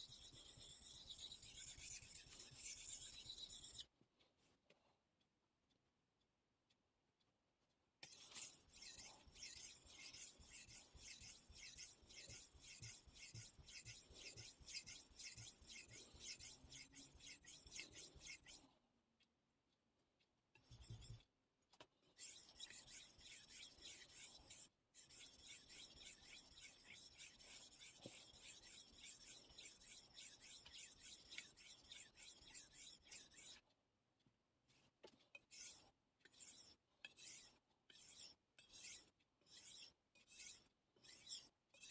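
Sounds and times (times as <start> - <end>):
knife rasping on whetstone: 0.0 - 3.8, 8.0 - 18.6, 20.6 - 21.2, 22.2 - 33.6, 35.5 - 41.9.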